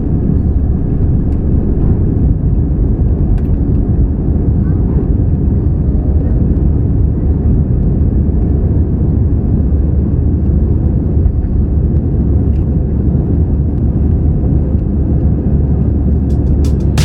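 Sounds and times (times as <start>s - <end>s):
jet engine rumble inside cabin: 0.0s - 16.7s
rushing air noise: 16.1s - 17.0s.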